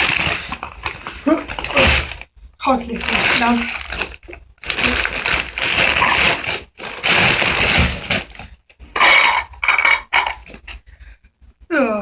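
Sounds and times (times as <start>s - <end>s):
sack rustling: 0.0s - 2.2s, 2.9s - 8.6s
shells crunching in a sack: 3.0s - 8.3s.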